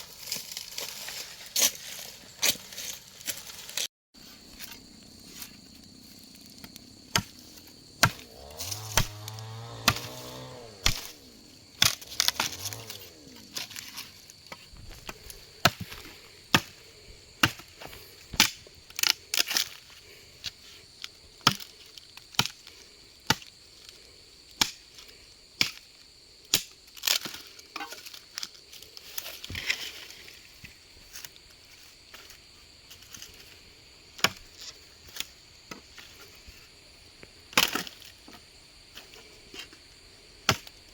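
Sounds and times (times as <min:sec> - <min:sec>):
blade chopping wood: 0:07.1 - 0:16.8, 0:17.4 - 0:19.8, 0:21.4 - 0:22.6, 0:24.6 - 0:24.8, 0:37.5 - 0:38.1, 0:40.5 - 0:40.8.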